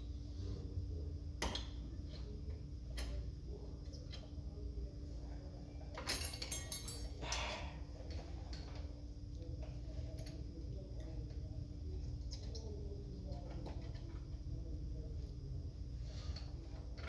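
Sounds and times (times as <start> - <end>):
steady low hum: 0.0 - 17.0
metallic clinks ringing: 6.1 - 7.2.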